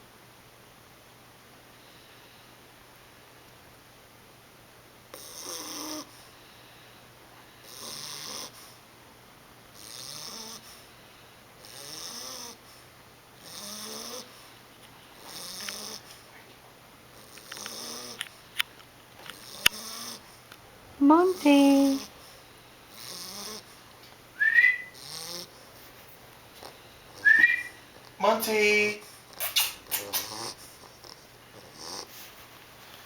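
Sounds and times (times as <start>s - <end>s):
puppy snoring: 5.1s - 6.4s, 7.5s - 8.8s, 9.7s - 16.3s, 17.1s - 18.6s, 19.2s - 25.9s, 26.5s - 32.4s.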